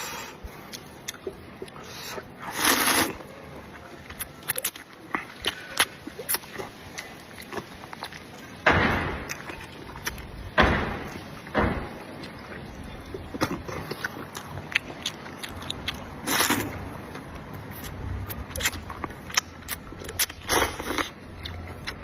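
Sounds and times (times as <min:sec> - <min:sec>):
chewing clicks and smacks: 0:04.1 - 0:08.5, 0:12.2 - 0:22.0.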